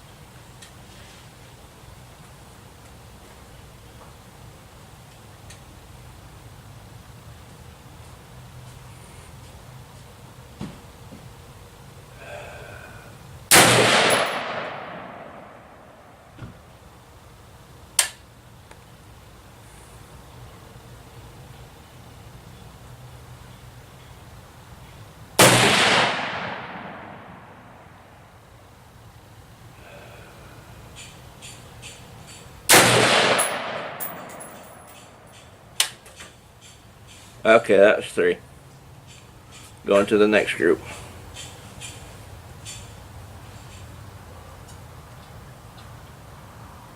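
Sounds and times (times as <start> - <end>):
rifle gunshot with echo: 13.5 - 16.0, 25.4 - 27.8, 32.7 - 34.6
quieter sharp crack: 13.5 - 16.3, 25.4 - 28.1, 32.7 - 36.0.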